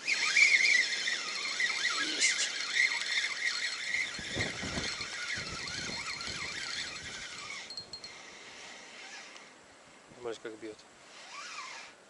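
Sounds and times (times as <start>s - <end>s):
fishing reel squeaking and whirring: 0.0s - 9.6s, 11.1s - 12.0s
wind buffeting microphone: 4.0s - 8.1s.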